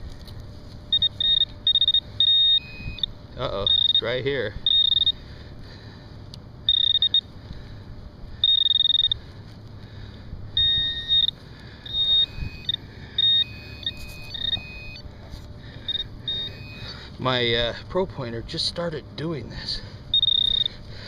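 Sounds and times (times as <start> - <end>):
metal detector beeps: 0.9 - 5.2, 6.6 - 7.3, 8.4 - 9.2, 10.5 - 15.1, 15.8 - 17.1, 20.1 - 20.8.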